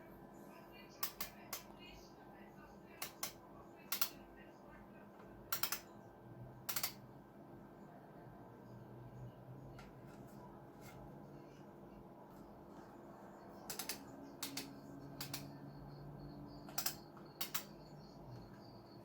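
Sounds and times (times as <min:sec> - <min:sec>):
faint steady hum: 0:00.0 - 0:19.0
light sharp clicks: 0:13.6 - 0:15.5, 0:16.7 - 0:17.7.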